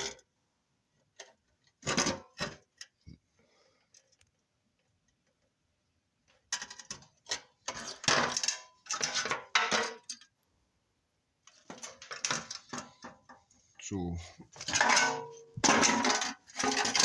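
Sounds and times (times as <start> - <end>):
metal objects clinking: 6.6 - 10.3, 14.5 - 17.0.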